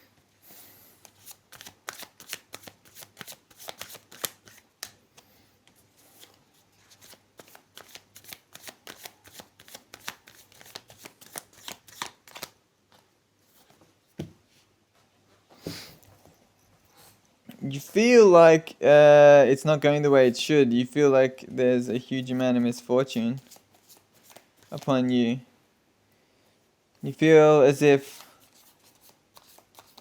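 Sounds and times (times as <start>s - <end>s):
cards being shuffled: 1.0s - 12.6s, 23.4s - 25.0s, 28.0s - 30.0s.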